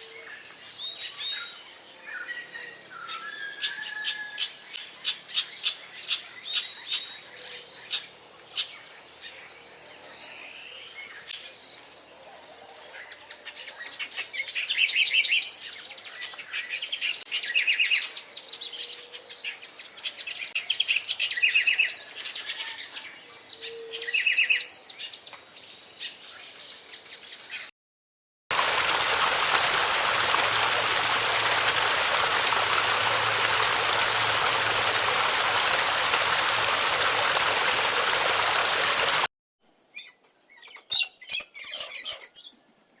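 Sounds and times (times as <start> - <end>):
stream rushing: 28.5 - 39.3
birds singing and trilling: 40.0 - 42.7.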